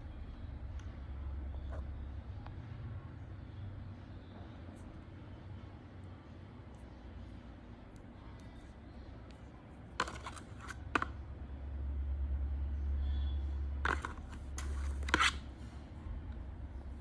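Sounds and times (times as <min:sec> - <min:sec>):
packaging clicks and rustles: 0:10.0 - 0:11.1, 0:13.9 - 0:15.4.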